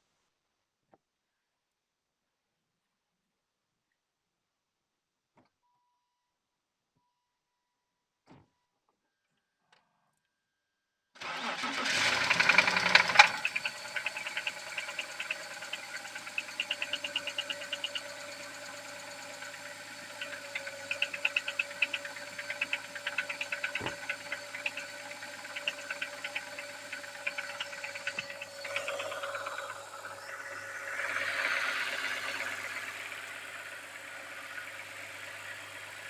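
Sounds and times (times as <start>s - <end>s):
engine knocking: 11.2s - 36.0s
car engine running: 11.3s - 36.0s.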